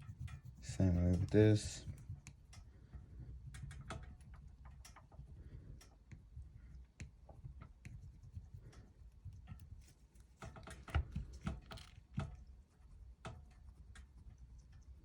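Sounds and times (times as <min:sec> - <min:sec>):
wax crayon rubbing and clicking: 0:00.0 - 0:02.6, 0:06.1 - 0:15.0.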